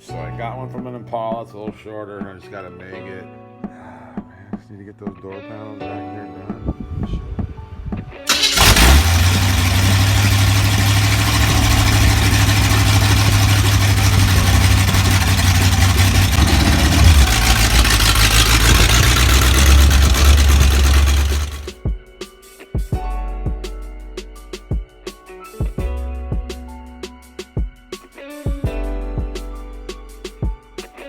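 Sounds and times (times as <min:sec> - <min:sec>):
car engine starting and running: 0:08.3 - 0:21.7.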